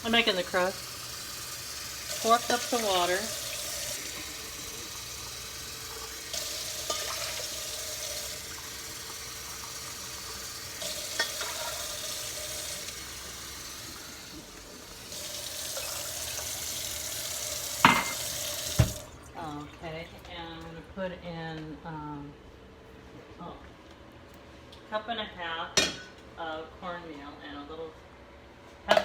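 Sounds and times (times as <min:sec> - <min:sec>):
tap running water into container: 0:00.0 - 0:19.7.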